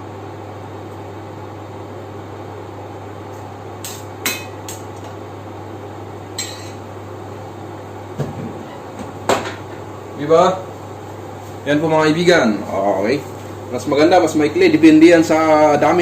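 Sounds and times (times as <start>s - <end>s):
steady background hum: 0.0s - 16.0s
pot or dishes clinking: 6.4s - 6.8s.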